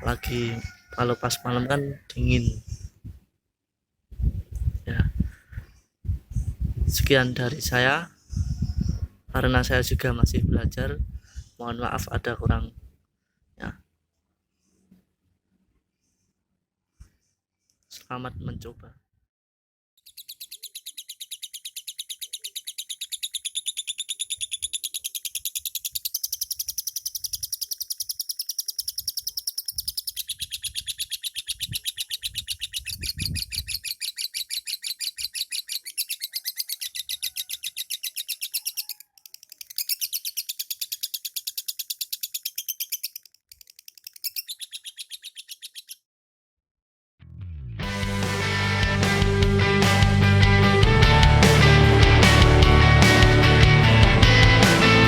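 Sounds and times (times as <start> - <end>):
lovebird chattering song: 20.0 - 46.0.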